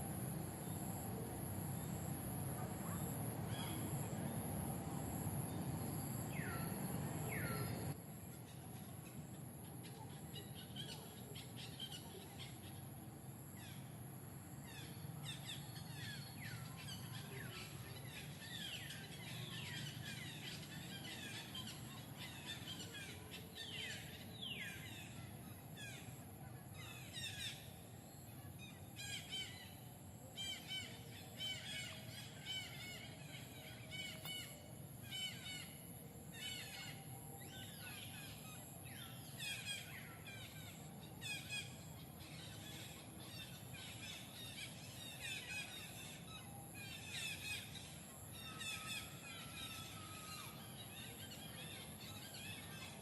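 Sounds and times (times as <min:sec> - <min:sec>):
steady low hum: 0:00.0 - 0:53.0.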